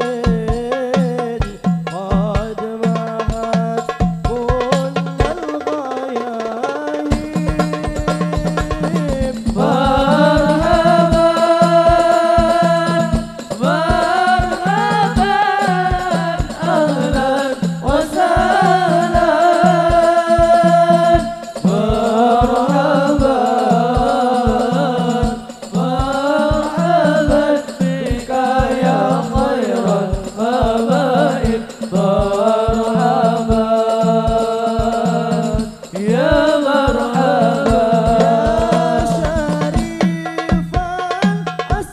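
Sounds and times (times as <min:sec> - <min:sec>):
frame drums beating: 0:00.0 - 0:41.9
voices singing devotional song: 0:00.0 - 0:41.9.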